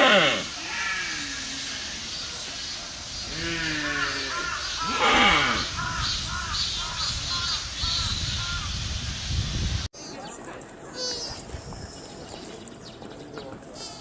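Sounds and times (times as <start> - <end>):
deer calls: 0.0 - 2.4, 3.2 - 8.3.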